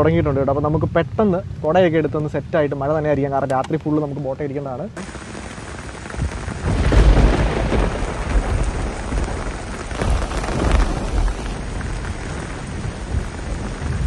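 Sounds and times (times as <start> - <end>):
rain falling: 0.0 - 14.0
heavy low rumbling: 4.9 - 14.0.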